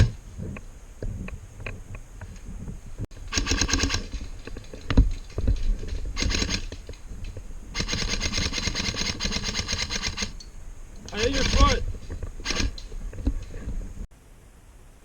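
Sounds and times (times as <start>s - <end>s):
airsoft guns firing bursts: 3.2s - 4.5s, 6.0s - 6.8s, 7.8s - 10.4s, 11.1s - 11.8s, 12.4s - 12.8s.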